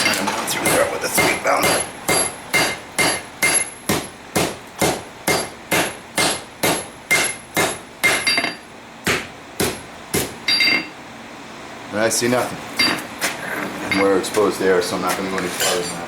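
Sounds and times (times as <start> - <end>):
hammer striking metal on anvil: 0.0 - 10.9.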